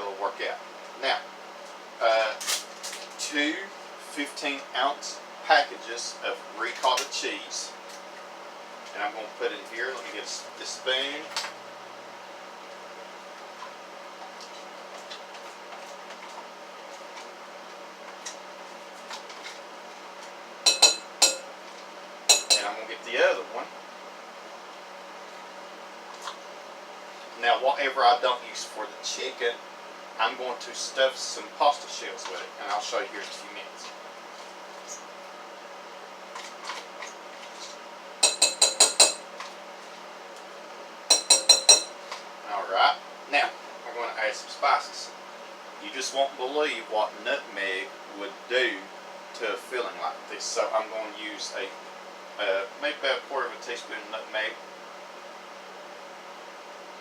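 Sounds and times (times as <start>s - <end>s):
spoon clicking and scraping: 20.7s - 21.4s, 22.3s - 22.7s, 38.2s - 39.2s, 41.1s - 41.9s
spoon clinking on bowl: 20.7s - 21.4s, 22.3s - 22.7s, 38.2s - 39.2s, 41.1s - 41.9s.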